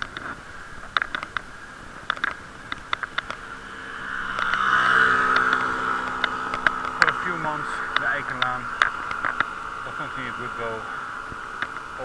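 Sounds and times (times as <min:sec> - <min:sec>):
bicycle riding noise: 0:00.0 - 0:12.0
steady droning hum: 0:00.0 - 0:12.0.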